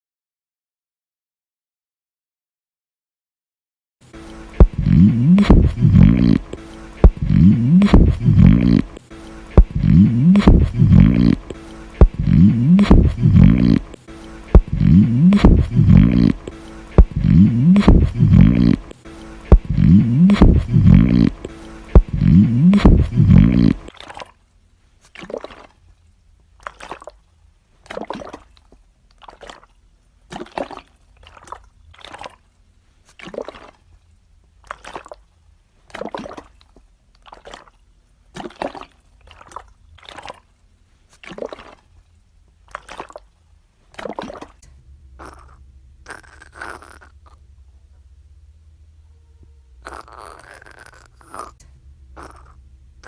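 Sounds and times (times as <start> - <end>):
bowel gurgles: 4.2 - 24.3, 44.0 - 44.6, 45.2 - 47.4, 49.8 - 51.6, 52.2 - 52.6.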